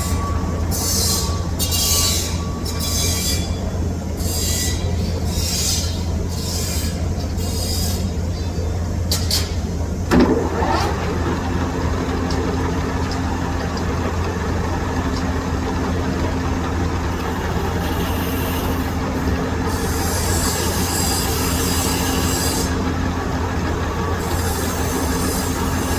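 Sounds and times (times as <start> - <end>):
metal lathe motor hum: 9.8 - 25.9.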